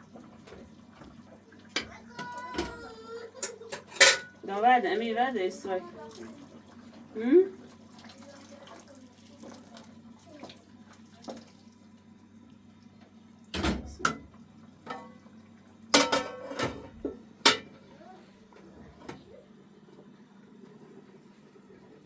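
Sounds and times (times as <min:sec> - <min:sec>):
metal kitchenware clattering: 0:03.4 - 0:04.4, 0:14.9 - 0:15.2, 0:16.0 - 0:16.9, 0:17.5 - 0:17.8.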